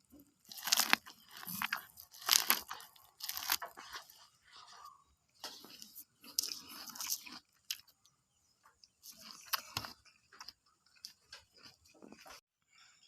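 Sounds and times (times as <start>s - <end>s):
biting and chewing corn: 0.0s - 12.4s.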